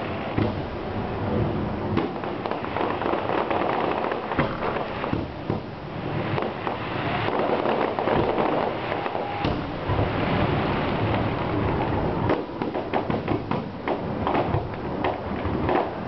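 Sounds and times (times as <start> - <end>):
fireworks crackling: 0.0 - 16.0
loud firework cracks: 0.0 - 16.0.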